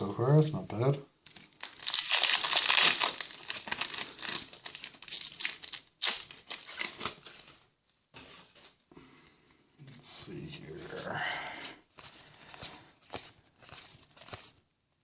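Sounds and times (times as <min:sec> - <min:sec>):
foil wrapper crinkling: 0:01.3 - 0:07.7.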